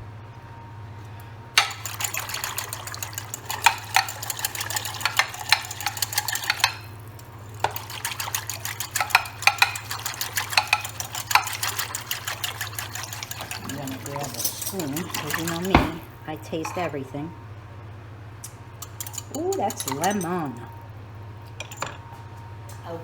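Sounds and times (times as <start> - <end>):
whisk clicking against bowl: 1.6 - 16.1, 18.8 - 20.3.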